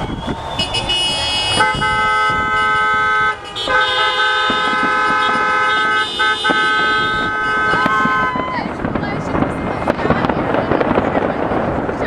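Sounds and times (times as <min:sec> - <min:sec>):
car horns honking: 0:00.0 - 0:10.9.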